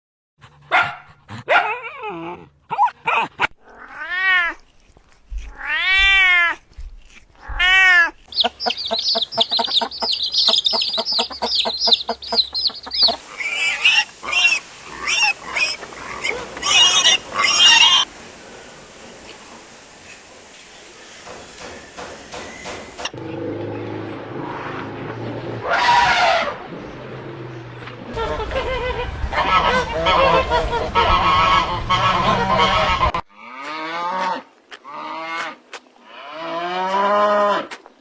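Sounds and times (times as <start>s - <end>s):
farm animal calls: 8.2s - 18.1s, 28.1s - 37.8s.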